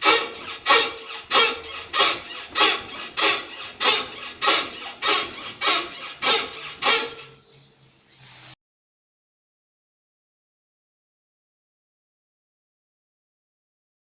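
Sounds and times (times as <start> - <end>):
rhythmic suspension bushing squeak: 0.0 - 7.8.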